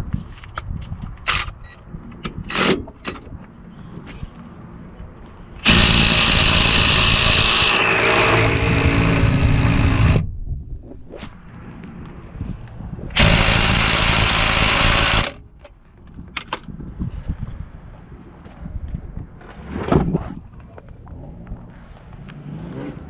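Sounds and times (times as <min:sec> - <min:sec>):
impact wrench running: 0:05.6 - 0:10.2, 0:13.1 - 0:15.4.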